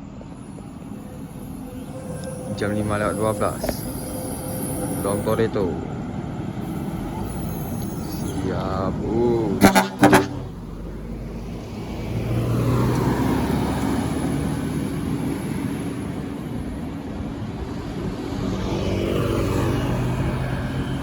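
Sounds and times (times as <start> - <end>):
bus engine humming: 0.0 - 21.0.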